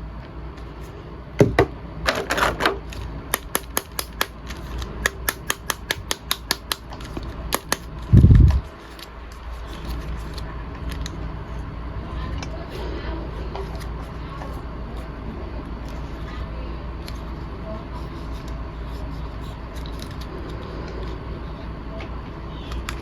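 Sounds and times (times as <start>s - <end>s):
dull thump: 1.4s - 1.8s.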